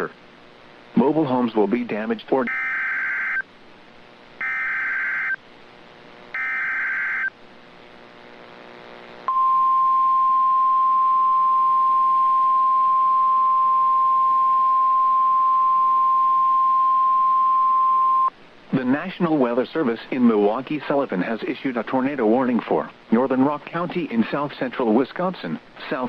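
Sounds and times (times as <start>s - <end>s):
faint radio hiss: 0.0s - 26.0s
steady warning alarm tone: 2.5s - 3.4s, 4.4s - 5.4s, 6.4s - 7.3s.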